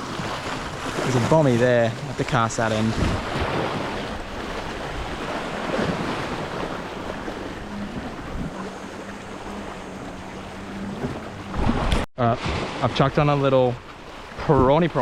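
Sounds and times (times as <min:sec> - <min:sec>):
waves washing against rocks: 0:00.0 - 0:08.6
wind buffeting microphone: 0:00.0 - 0:12.0.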